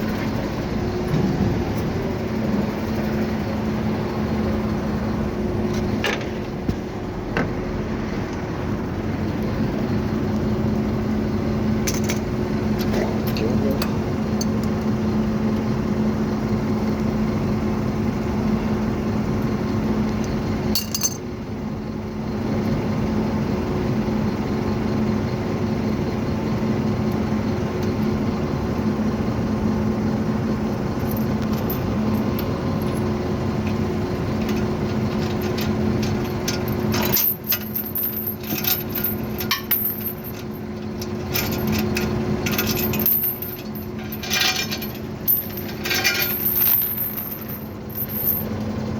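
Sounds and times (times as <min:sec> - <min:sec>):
truck engine running: 0:00.0 - 0:48.9
metal chains clinking: 0:31.0 - 0:33.1, 0:34.4 - 0:48.5.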